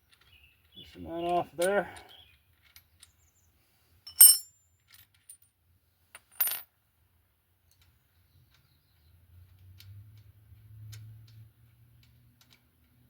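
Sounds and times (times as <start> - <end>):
steel tools clinking together: 4.1 - 4.5.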